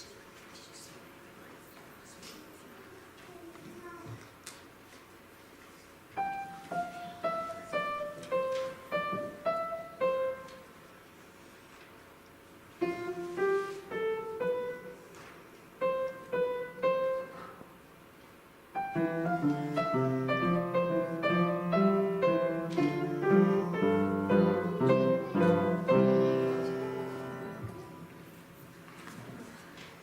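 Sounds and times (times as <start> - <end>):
piano melody: 6.2 - 10.8, 12.8 - 15.1, 15.8 - 17.4, 18.7 - 28.8.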